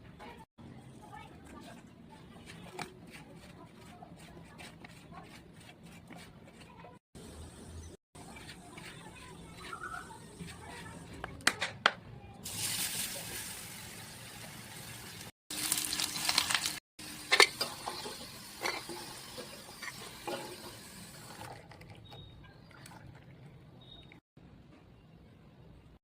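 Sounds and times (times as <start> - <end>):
potatoes frying in hot oil: 12.4 - 21.2.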